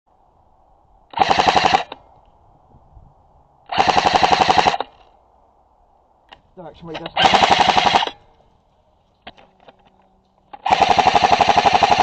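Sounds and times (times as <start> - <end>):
airsoft gun full-auto bursts: 1.2 - 2.0, 3.7 - 5.0, 7.0 - 8.2, 10.6 - 12.0.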